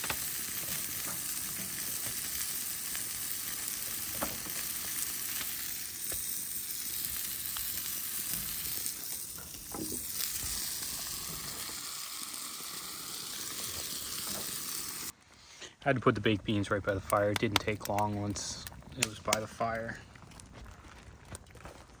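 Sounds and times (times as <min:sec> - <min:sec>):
steaks sizzling: 0:00.0 - 0:15.2
fire crackles and pops: 0:00.0 - 0:22.0.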